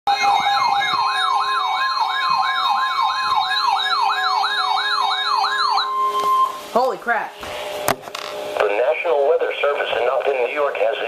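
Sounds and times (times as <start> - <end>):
electronic alert siren sweeping: 0.1 - 6.8.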